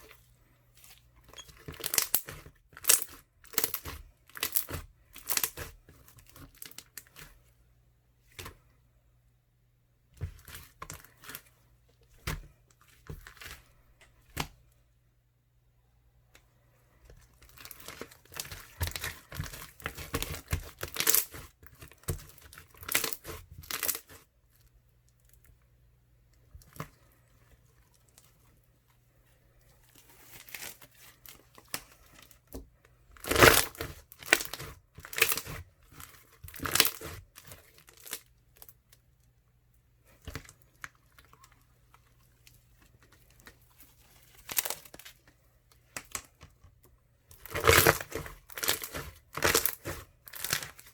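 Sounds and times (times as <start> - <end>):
crunchy slime crackling and popping: 0.8 - 7.4, 17.4 - 24.3, 33.2 - 38.9, 43.0 - 46.4, 47.3 - 50.9.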